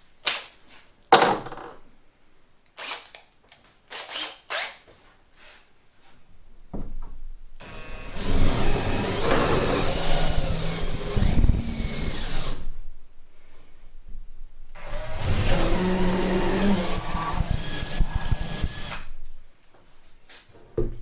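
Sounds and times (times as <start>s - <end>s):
power drill running: 7.6s - 12.6s, 14.8s - 19.1s.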